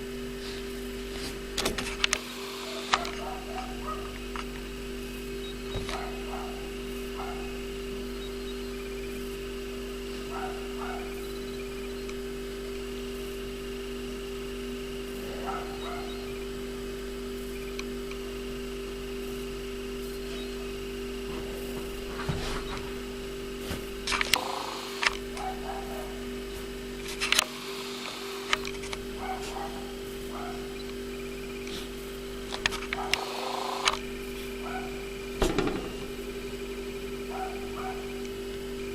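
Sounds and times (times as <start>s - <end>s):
low electrical hum: 0.0s - 38.9s
sharp clicks and knocks: 35.4s - 36.2s.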